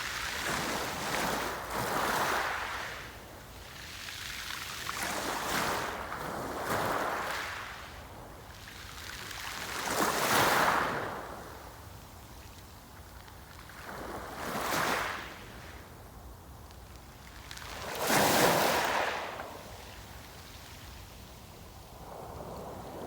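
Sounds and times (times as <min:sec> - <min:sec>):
sea waves breaking on shore: 0:17.2 - 0:21.2.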